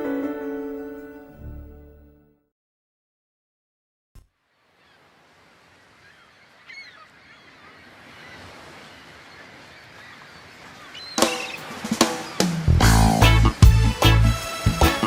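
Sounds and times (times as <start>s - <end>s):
bird call: 4.6s - 13.4s
loud music with drums: 11.3s - 15.0s.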